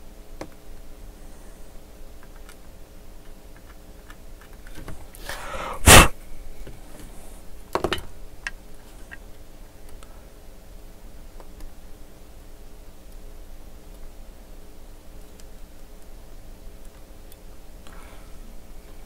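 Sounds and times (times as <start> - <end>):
burst of breath on microphone: 5.2 - 6.1
breath hissing: 5.2 - 6.2.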